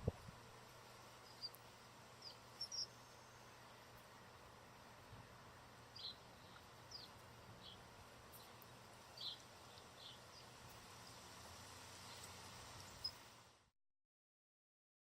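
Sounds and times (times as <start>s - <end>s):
quiet background hiss: 0.0s - 13.7s
faint songbird chirps: 0.9s - 4.6s, 5.9s - 11.2s, 12.0s - 13.3s.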